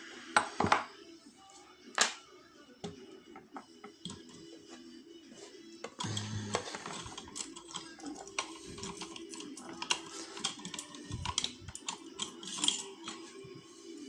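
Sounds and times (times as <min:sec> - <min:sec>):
small metal parts clicking: 0:06.0 - 0:13.2.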